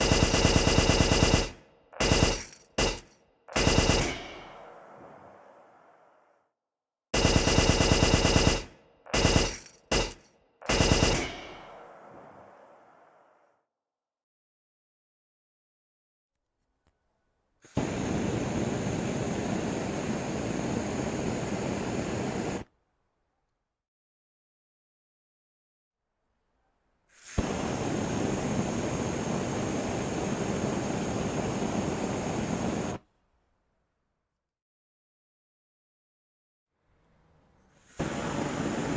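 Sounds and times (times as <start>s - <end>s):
automatic rifle fire: 0.0s - 3.0s, 3.6s - 4.3s, 7.2s - 11.5s
flamethrower flame rushing: 17.8s - 22.6s, 27.3s - 33.0s, 38.0s - 38.9s.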